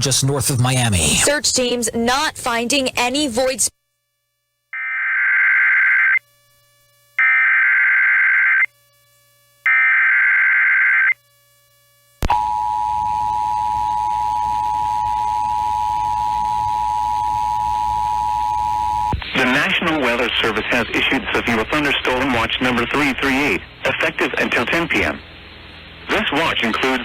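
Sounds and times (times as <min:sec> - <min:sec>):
digital data tone bursts: 0:07.2 - 0:08.7, 0:09.7 - 0:11.2
radio hiss: 0:19.0 - 0:27.0.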